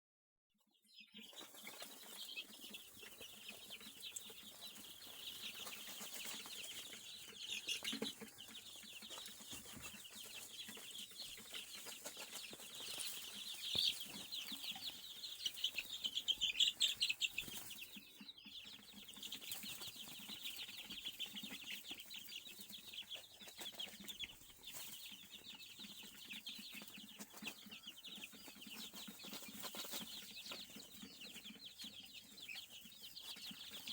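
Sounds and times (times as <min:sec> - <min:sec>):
chicks peeping: 0:00.7 - 0:33.9.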